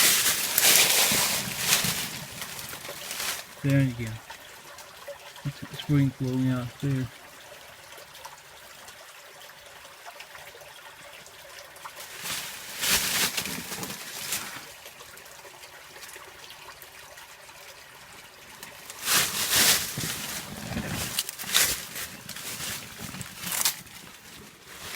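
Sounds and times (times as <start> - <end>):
water rushing: 0.0 - 7.2
water trickling: 0.0 - 24.9.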